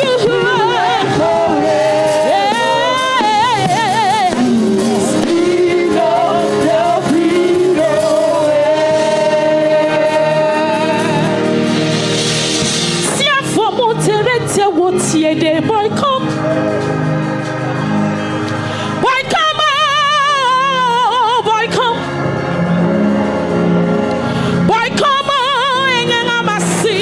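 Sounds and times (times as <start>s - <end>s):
gospel singing solo voice: 0.0s - 27.0s
instrumental backing: 0.0s - 27.0s.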